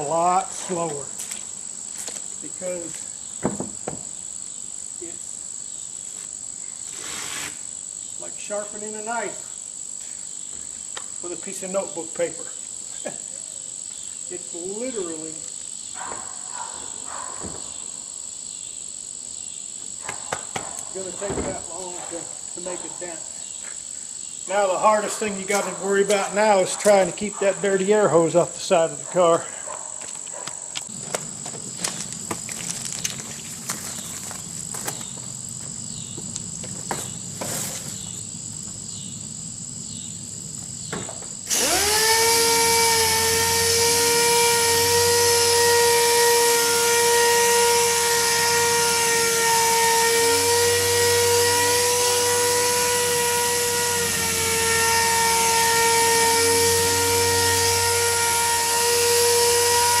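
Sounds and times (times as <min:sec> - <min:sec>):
air-powered orbital sander whining: 0:06.2 - 0:07.7, 0:30.8 - 1:00.0.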